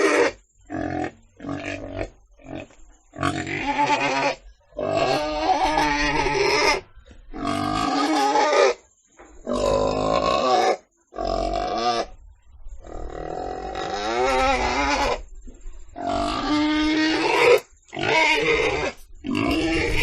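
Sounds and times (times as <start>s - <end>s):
pig calling: 0.0s - 8.8s, 12.8s - 15.2s, 16.0s - 20.0s.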